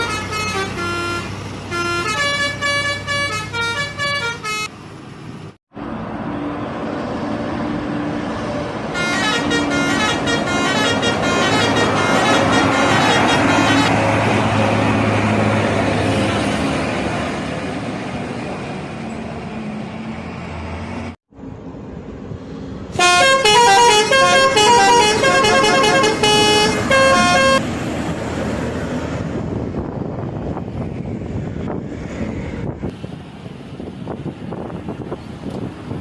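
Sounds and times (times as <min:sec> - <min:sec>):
bus horn playing melody: 0:00.0 - 0:04.7, 0:08.9 - 0:14.4, 0:23.0 - 0:27.6
bus engine: 0:00.0 - 0:36.0
road noise: 0:00.0 - 0:36.0.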